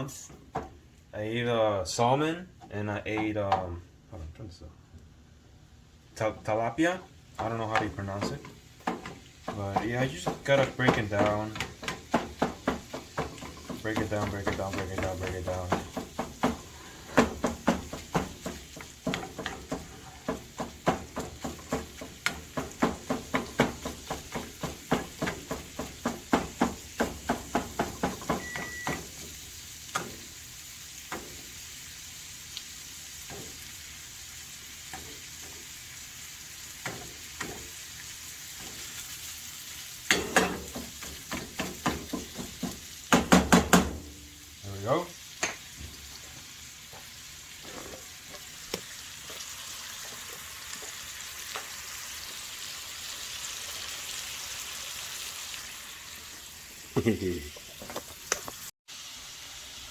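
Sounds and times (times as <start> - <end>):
meat sizzling: 7.3 - 59.9
spatula knocking against pan: 7.4 - 29.1, 40.1 - 44.2.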